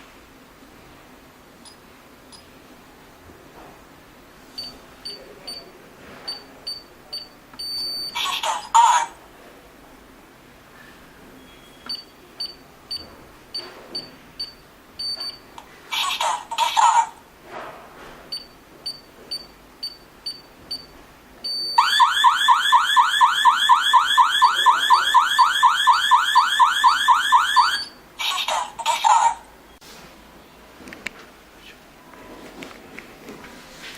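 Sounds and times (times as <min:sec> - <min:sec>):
keypad beeps: 0:06.3 - 0:08.7, 0:11.8 - 0:15.4, 0:18.3 - 0:20.9
alarm siren rising sweeps: 0:21.8 - 0:27.9.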